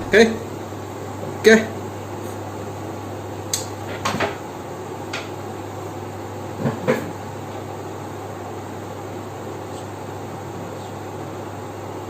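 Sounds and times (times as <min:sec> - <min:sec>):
steady low hum: 0:00.0 - 0:03.2.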